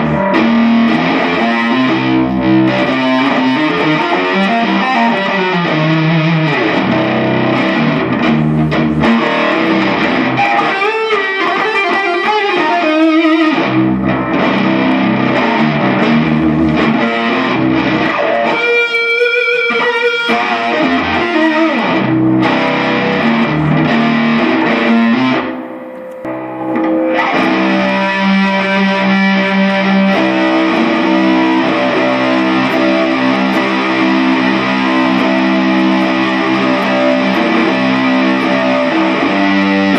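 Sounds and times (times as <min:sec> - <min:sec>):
loud guitar music: 0:00.0 - 0:39.9.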